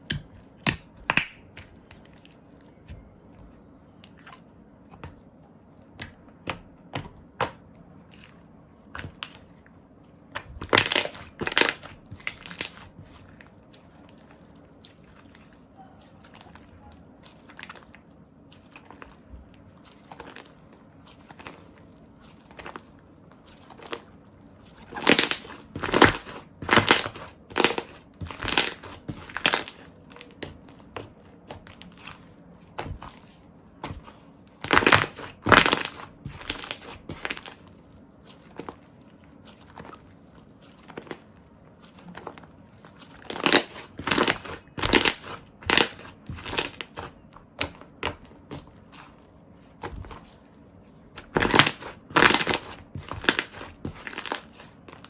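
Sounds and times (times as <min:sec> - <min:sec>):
slime squished with crackling pops: 0:10.3 - 0:13.2, 0:24.8 - 0:33.2, 0:33.8 - 0:37.6, 0:43.0 - 0:50.3, 0:51.1 - 0:55.0.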